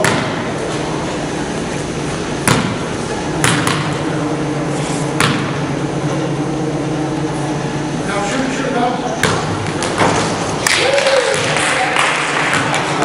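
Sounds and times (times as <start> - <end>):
gym background noise: 0.0 - 13.0
basketball bouncing on wooden floor: 2.4 - 2.8, 3.4 - 3.9.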